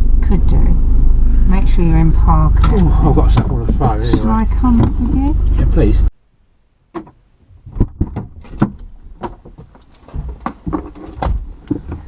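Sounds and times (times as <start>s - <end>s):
people climbing out: 0.2s - 6.1s, 6.9s - 12.0s
vehicle door knocks and thuds: 7.0s - 12.0s.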